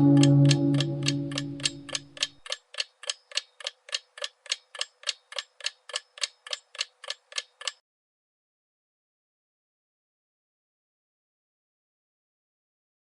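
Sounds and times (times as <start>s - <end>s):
low musical tone: 0.0s - 2.4s
clock ticking: 0.0s - 7.8s.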